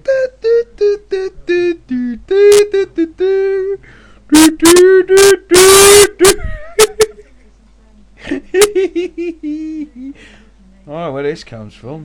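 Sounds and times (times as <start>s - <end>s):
man singing in squawking voice: 0.0s - 6.6s.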